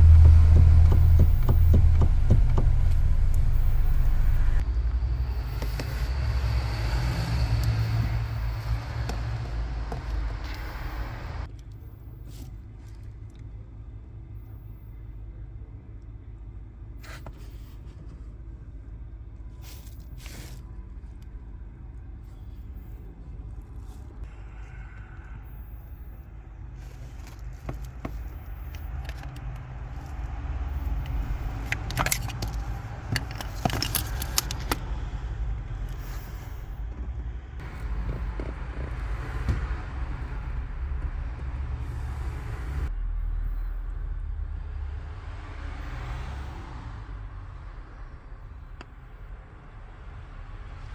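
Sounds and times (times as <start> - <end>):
knocks and clicks: 0.0 - 4.6, 30.9 - 35.0
car engine idling: 0.0 - 44.5.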